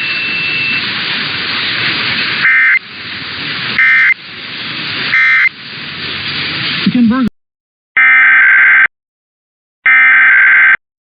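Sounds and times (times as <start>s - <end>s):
radio static hiss: 6.8s - 7.3s.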